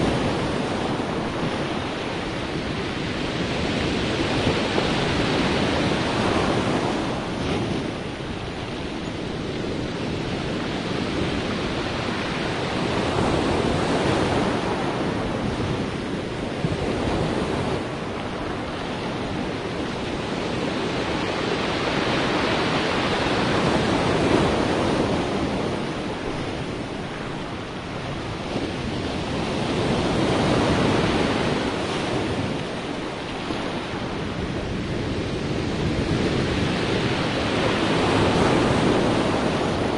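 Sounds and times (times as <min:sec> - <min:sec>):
sea waves washing in: 0:00.0 - 0:39.9.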